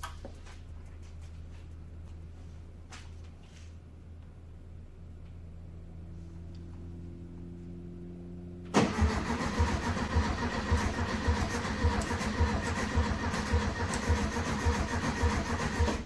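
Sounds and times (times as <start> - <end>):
car engine cranking and chugging: 6.5 - 16.0.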